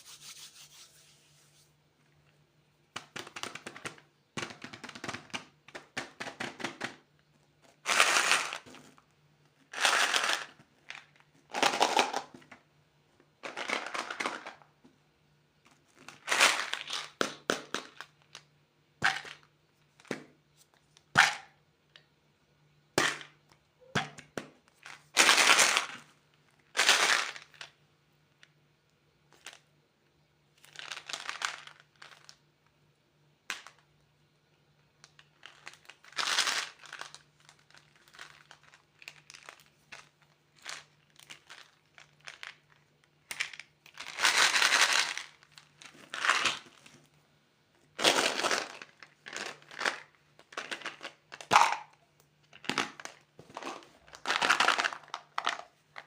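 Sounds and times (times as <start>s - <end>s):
plastic wrappers crinkling: 35.1s - 47.1s, 48.0s - 56.0s.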